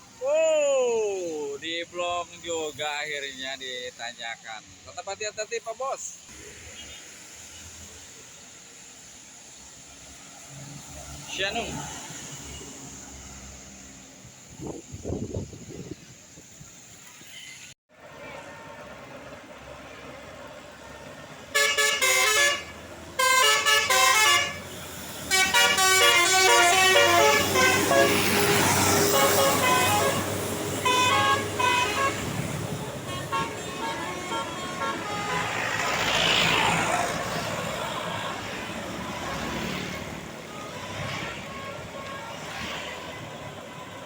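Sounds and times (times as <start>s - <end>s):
bus passing: 5.6s - 44.0s
multi-tone musical bus horn: 21.5s - 36.3s, 37.7s - 44.0s.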